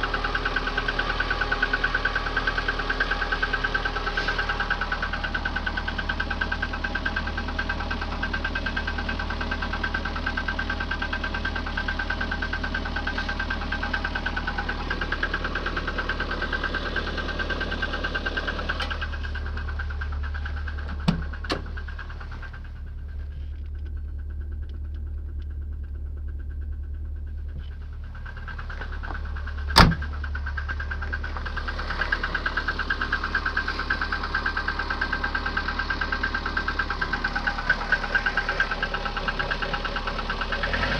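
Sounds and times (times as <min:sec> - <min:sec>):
car engine idling with knock: 0:00.0 - 0:40.9
loud thump: 0:29.7 - 0:30.2.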